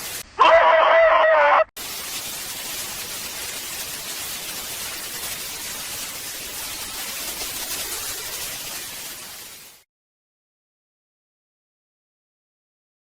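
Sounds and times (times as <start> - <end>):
steady static hiss: 0.0 - 0.5, 1.8 - 9.8.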